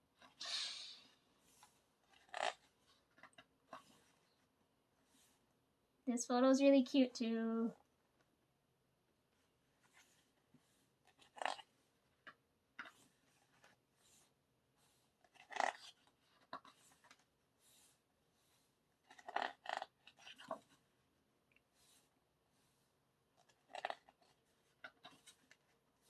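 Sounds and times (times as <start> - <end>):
pages turning: 1.4 - 5.4, 9.7 - 20.9, 23.4 - 25.8.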